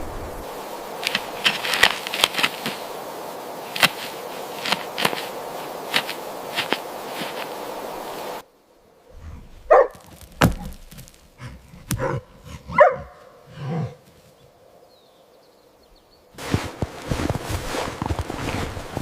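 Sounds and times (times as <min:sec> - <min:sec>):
rustle of footsteps: 0:00.0 - 0:08.4, 0:09.5 - 0:12.1, 0:16.4 - 0:19.0
dog barking: 0:09.6 - 0:10.1, 0:12.0 - 0:14.0.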